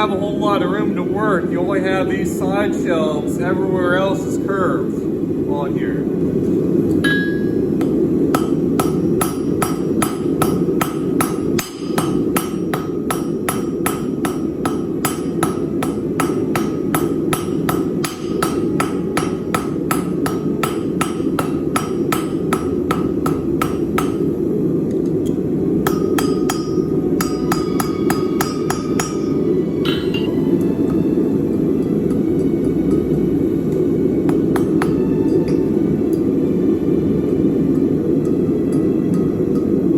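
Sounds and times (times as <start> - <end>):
steady low noise: 0.0 - 39.9
hammer blows on anvil: 7.0 - 24.2, 25.8 - 30.3.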